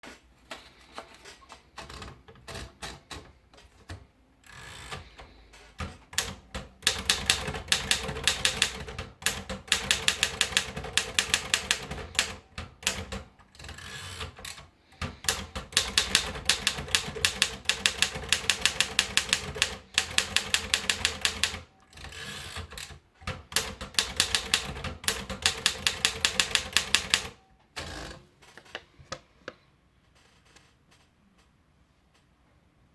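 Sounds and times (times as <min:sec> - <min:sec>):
typewriter key strikes: 0:05.8 - 0:21.6, 0:22.2 - 0:27.4.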